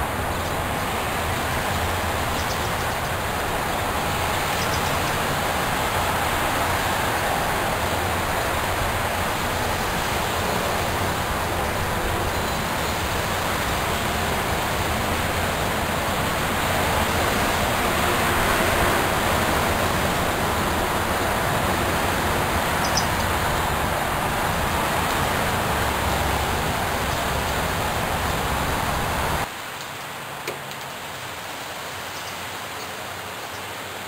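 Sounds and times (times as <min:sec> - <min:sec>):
fountain water splashing: 0:00.0 - 0:34.0
faint high chirp: 0:22.8 - 0:23.2.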